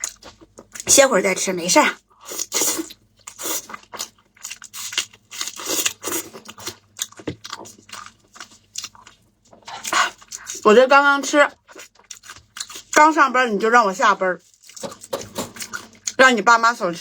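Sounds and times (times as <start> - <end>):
person chewing crunchy food: 0.0 - 0.9, 2.1 - 10.7, 11.5 - 13.0, 14.4 - 16.2.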